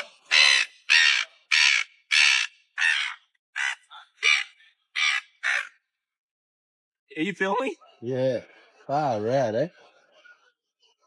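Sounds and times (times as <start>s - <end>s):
seagull squawking: 0.0s - 5.8s.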